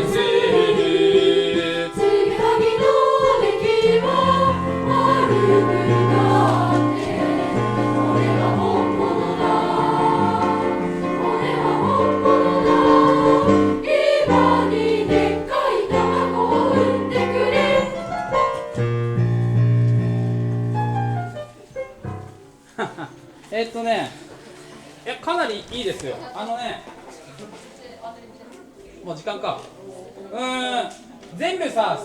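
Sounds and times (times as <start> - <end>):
children's choir singing: 0.0 - 18.8.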